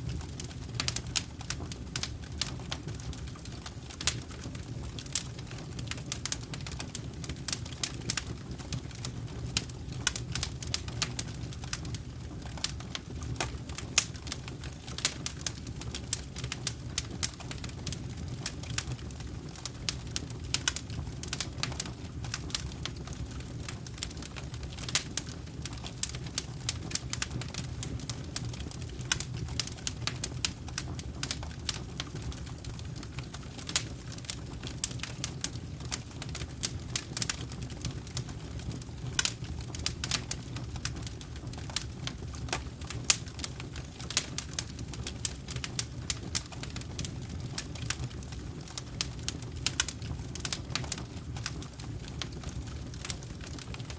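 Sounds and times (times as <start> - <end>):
fire popping and snapping: 0.0 - 53.9
low rumble of flames: 0.0 - 53.9.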